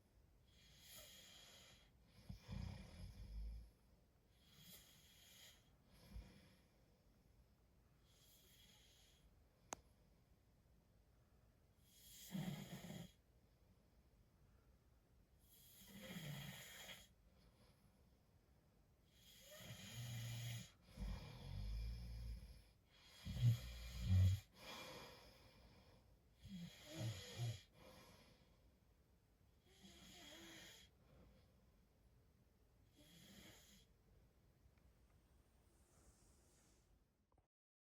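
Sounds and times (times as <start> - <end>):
man snoring: 12.0 - 13.2, 15.8 - 17.0, 19.2 - 22.4, 23.1 - 24.6, 26.4 - 27.8, 29.7 - 30.9, 33.0 - 33.8.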